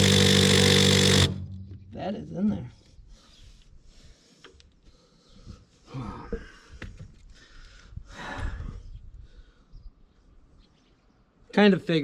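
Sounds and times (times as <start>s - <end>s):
man breathing heavily: 2.8s - 9.8s.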